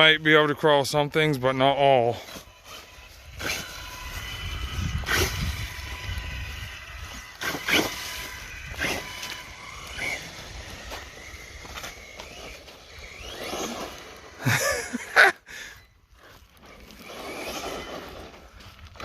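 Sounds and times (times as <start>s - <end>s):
rc car rumbling over ground: 0.0s - 19.0s
electric motor whine: 1.4s - 19.0s.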